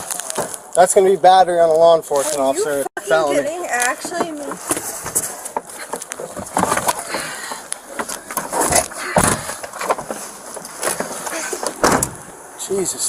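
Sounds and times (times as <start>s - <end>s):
rustling of a struggle: 2.1s - 12.3s.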